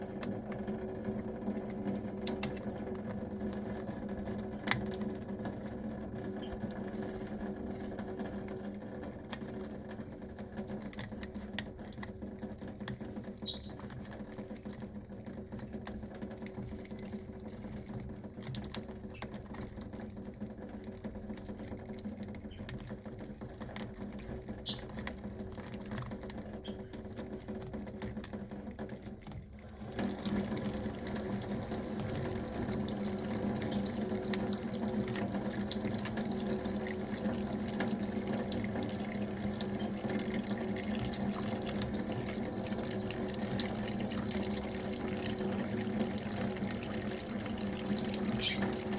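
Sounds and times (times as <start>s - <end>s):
high bird chirp: 13.4s - 13.9s, 24.7s - 24.9s, 48.4s - 48.7s
bird splashing water: 29.7s - 48.9s.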